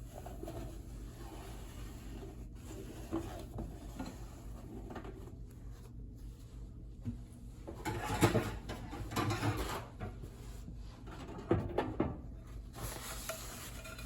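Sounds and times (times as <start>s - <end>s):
paper towel wiping inside microwave: 12.5s - 14.0s.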